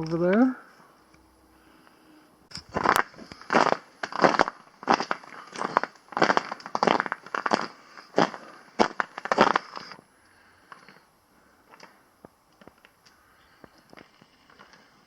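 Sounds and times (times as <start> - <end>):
footsteps crunching on ice: 2.6 - 10.0.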